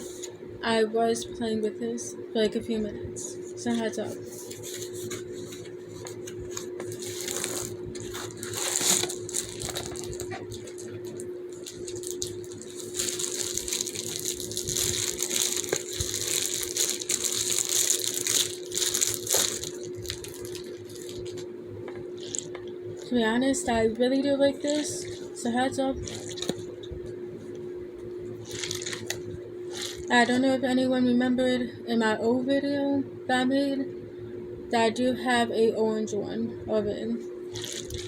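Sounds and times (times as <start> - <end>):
steady low hum: 0.0 - 38.0
fidget toy crinkly rustling: 3.8 - 21.4, 22.2 - 23.1, 24.5 - 25.4, 26.0 - 26.7, 28.4 - 30.4, 37.5 - 38.0.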